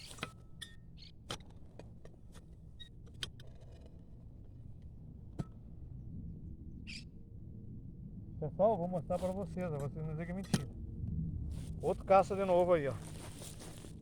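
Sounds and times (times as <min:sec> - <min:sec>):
shovel digging into soil: 0:00.0 - 0:00.4, 0:12.5 - 0:14.0
steady low rumble: 0:00.0 - 0:14.0.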